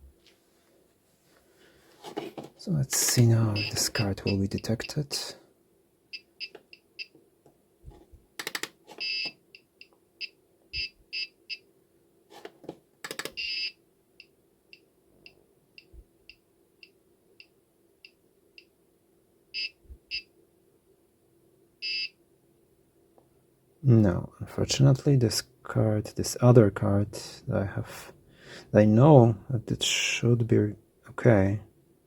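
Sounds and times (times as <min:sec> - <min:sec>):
faint steady hum: 0:00.0 - 0:32.0
piezo buzzer ticking: 0:03.5 - 0:05.0, 0:13.1 - 0:13.7.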